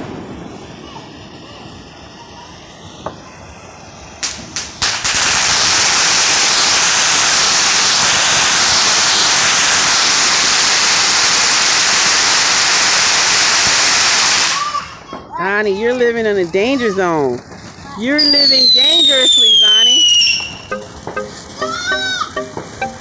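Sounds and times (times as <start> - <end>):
ground fountain firework hissing: 0.0 - 23.0
firework pops: 4.2 - 12.2, 13.2 - 15.4, 16.3 - 23.0.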